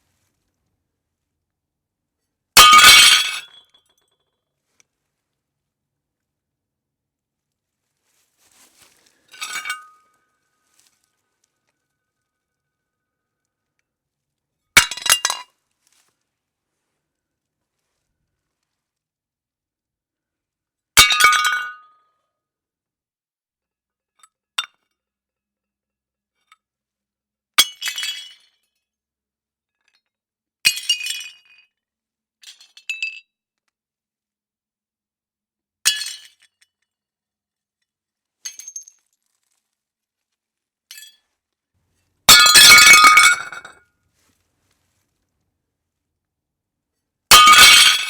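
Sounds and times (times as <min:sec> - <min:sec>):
ceramic plates smashing: 0:02.6 - 0:03.6, 0:42.3 - 0:43.8, 0:47.3 - 0:48.0
small clinks of pieces: 0:38.5 - 0:39.3
falling shards jangling: 0:42.3 - 0:43.7.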